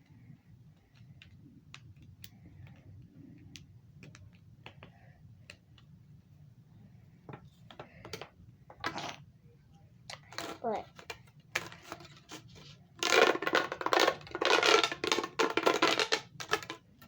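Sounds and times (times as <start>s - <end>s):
plastic fidget tubes clicking: 13.0s - 17.0s.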